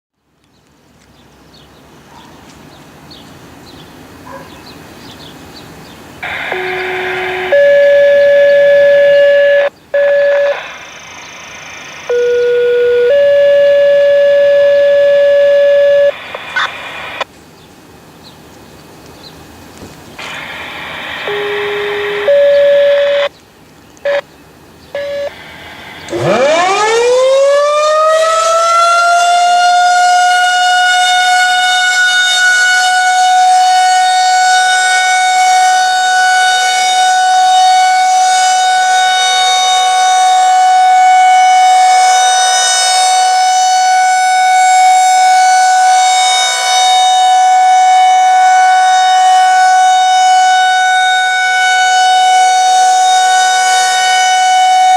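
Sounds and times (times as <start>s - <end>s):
rotating siren winding up: 6.2s - 16.7s, 21.1s - 23.3s, 26.0s - 54.9s
short steady tones: 6.2s - 16.7s, 20.4s - 23.3s, 25.0s - 28.5s.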